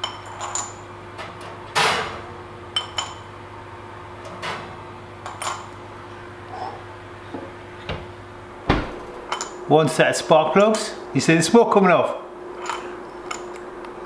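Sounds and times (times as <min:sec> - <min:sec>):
steady low hum: 0:00.0 - 0:14.0
loud knock: 0:08.7 - 0:09.1.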